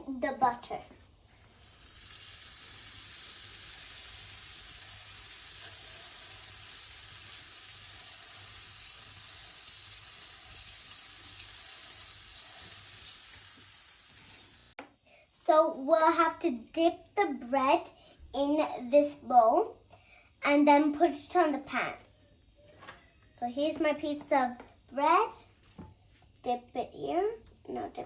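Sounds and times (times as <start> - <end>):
butter sizzling in a frying pan: 1.2 - 14.8.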